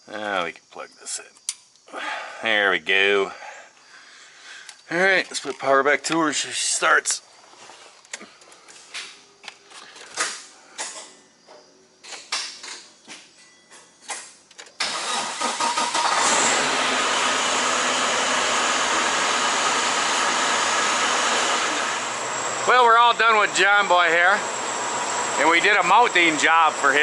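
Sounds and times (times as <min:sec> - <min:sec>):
diesel engine cranking and idling: 0:14.8 - 0:27.0.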